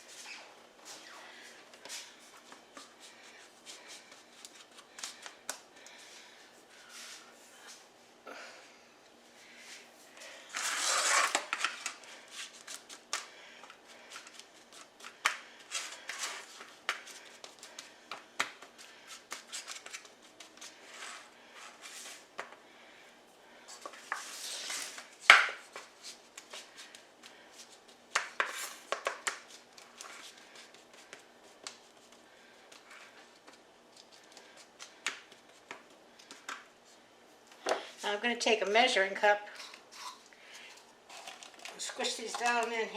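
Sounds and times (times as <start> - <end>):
rustling scrapes: 9.6 - 12.8, 20.6 - 22.3.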